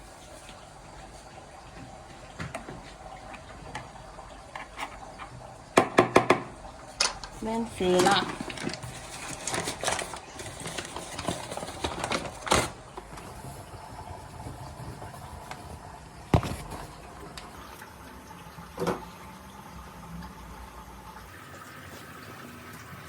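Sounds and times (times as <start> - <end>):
dough kneaded by hand: 7.4 - 17.6.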